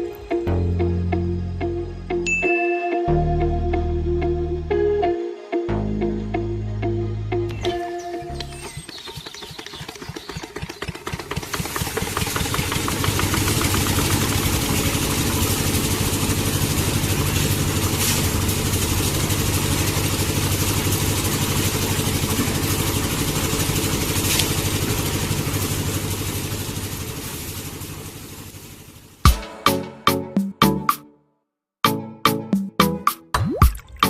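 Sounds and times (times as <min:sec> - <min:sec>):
small motor running: 0:07.7 - 0:28.8.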